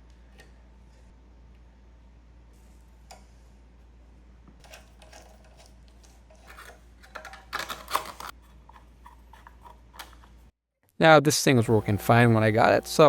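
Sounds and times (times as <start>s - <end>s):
hand tools and metal parts rattling: 4.6s - 10.4s.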